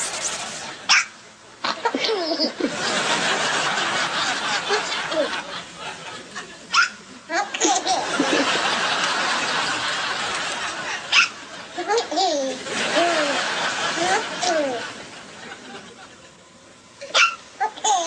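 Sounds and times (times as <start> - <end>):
baby laughing: 1.7 - 2.7, 4.6 - 5.4, 6.8 - 8.6, 10.8 - 15.0, 17.1 - 18.0.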